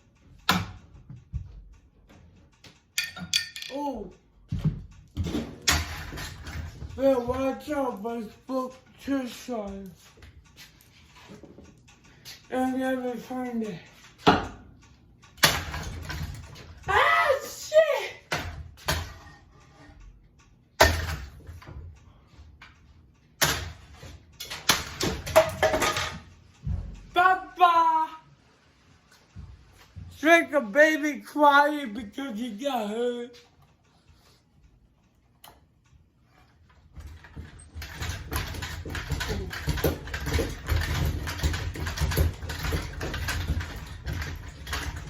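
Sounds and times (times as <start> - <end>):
fan clattering unevenly: 0.0 - 34.4, 36.1 - 45.0
ceiling fan humming: 0.0 - 45.0
blows striking a ceiling fan: 35.6 - 45.0.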